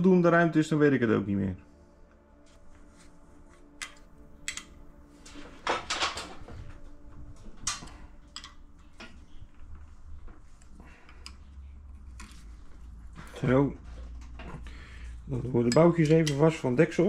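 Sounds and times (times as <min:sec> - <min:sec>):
faint steady hum: 0:00.0 - 0:17.0
metal tools clinking: 0:07.6 - 0:09.5, 0:15.5 - 0:16.6.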